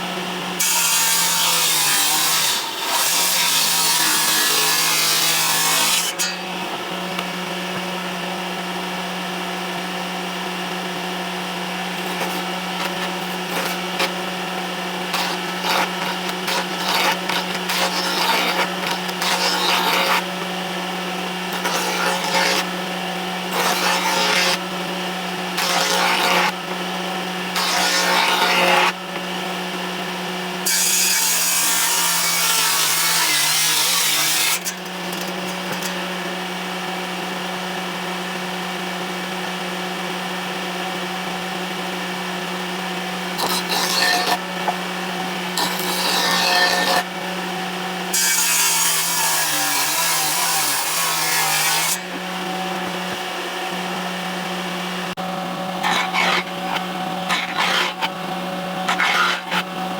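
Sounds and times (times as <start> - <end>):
power tool motor running: 9.2 - 29.4, 46.7 - 59.9
cutter biting into wood: 12.0 - 14.2, 55.7 - 59.8.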